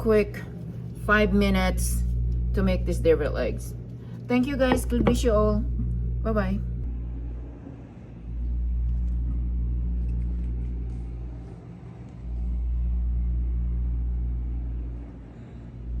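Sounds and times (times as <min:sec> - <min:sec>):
deep loud rumble: 0:00.0 - 0:11.6
steady low hum: 0:00.0 - 0:16.0.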